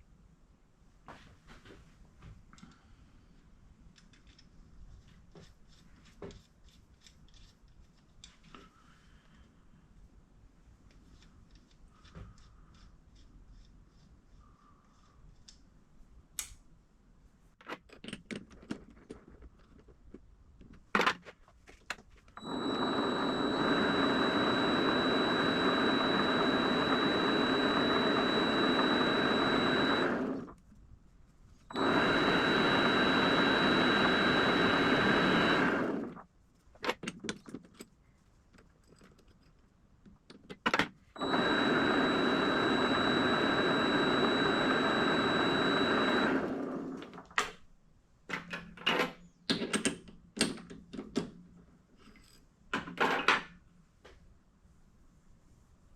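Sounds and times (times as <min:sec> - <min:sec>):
milling machine motor whine: 0:22.4 - 0:30.6, 0:31.7 - 0:36.2, 0:41.2 - 0:47.2
handling clicks and knocks: 0:36.8 - 0:41.0.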